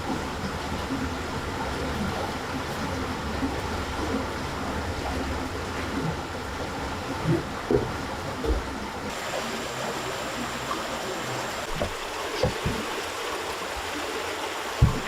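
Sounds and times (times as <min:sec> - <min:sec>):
flowing water rushing: 0:00.0 - 0:15.0
soft low thuds: 0:14.8 - 0:15.0.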